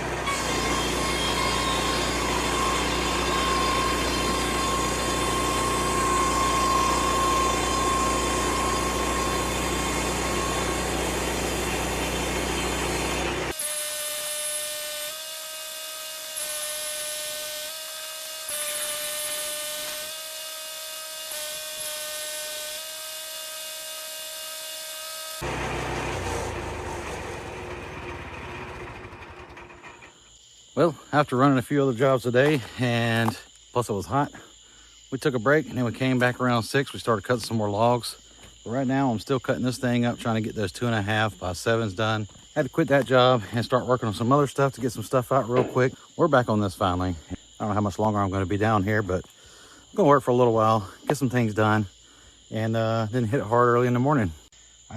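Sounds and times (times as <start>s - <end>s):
power saw cutting wood: 0.0s - 30.2s.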